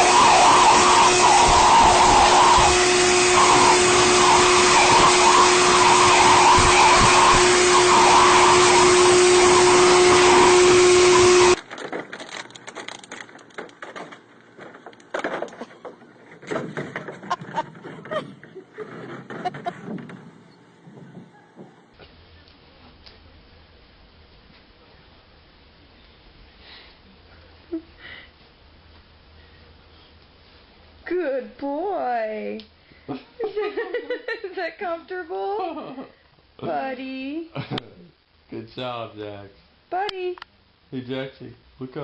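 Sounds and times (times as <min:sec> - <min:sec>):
blow dryer running: 0:00.0 - 0:11.7
faint clicks and rustles: 0:11.6 - 0:23.2.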